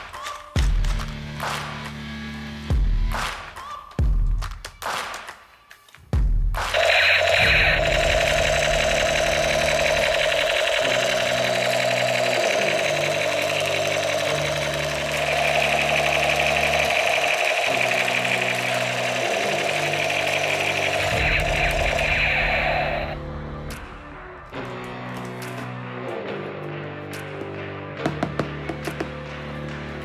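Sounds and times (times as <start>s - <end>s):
rapid buzzing rattle: 6.7s - 23.2s.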